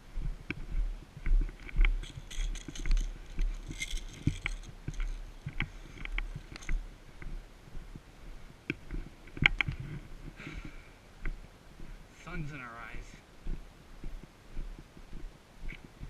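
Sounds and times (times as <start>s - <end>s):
wind rumble on microphone: 0.0s - 12.1s
irregular footsteps: 0.0s - 16.0s
rustling: 0.5s - 10.8s
gear knocking and rattling: 1.2s - 6.9s.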